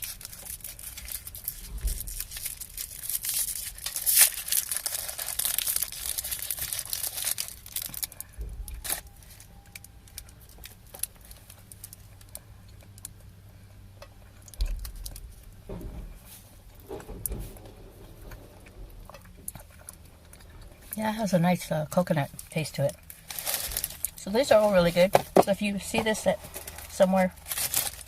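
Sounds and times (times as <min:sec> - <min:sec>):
plastic wrapper crinkling: 0:00.0 - 0:12.4, 0:22.4 - 0:25.0, 0:26.0 - 0:28.0.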